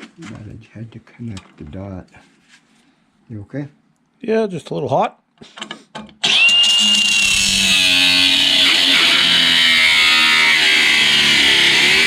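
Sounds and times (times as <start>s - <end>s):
grinder whine cutting metal: 6.2s - 12.0s.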